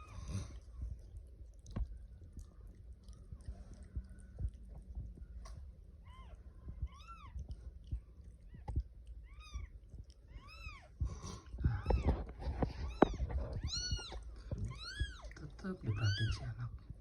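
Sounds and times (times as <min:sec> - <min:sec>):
rustling: 0:00.0 - 0:16.9
kitten mewing: 0:12.8 - 0:16.5.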